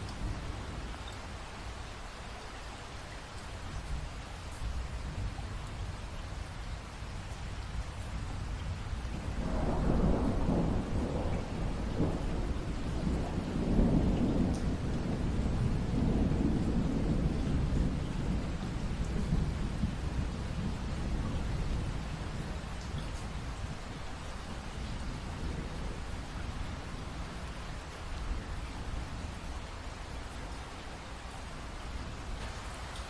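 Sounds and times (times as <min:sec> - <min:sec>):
steady rain: 0:00.0 - 0:33.0
rumble of thunder: 0:07.2 - 0:29.5.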